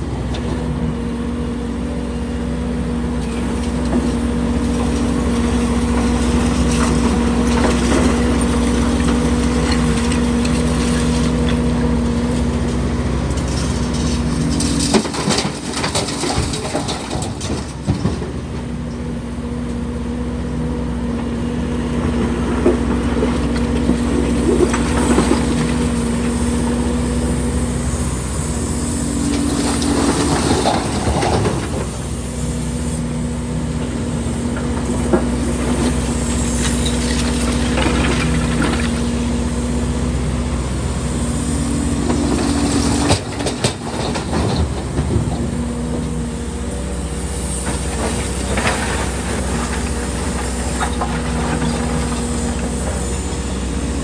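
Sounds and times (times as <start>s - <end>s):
excavator diesel engine running: 0.0s - 54.0s
bucket scraping concrete rubble: 29.1s - 31.9s.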